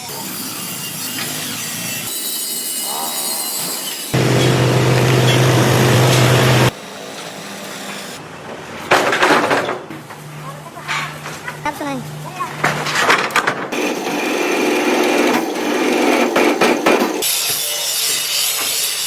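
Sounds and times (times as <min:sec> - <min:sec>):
buzzing power tool: 0:03.4 - 0:08.2, 0:13.8 - 0:17.5.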